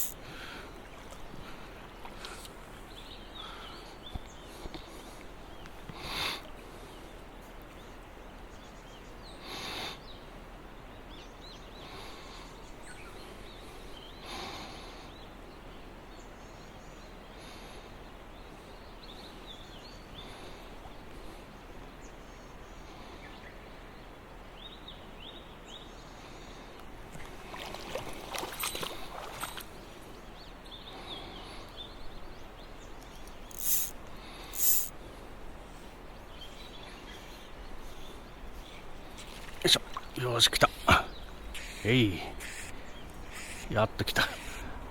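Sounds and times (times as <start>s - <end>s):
river current running: 0.0s - 16.0s, 26.0s - 44.9s
small birds chirping: 0.0s - 27.0s, 28.4s - 44.9s
sharp clicks and splashes: 26.8s - 29.7s
short loud hissing swishes: 33.5s - 34.9s
hissing swish: 34.5s - 34.9s.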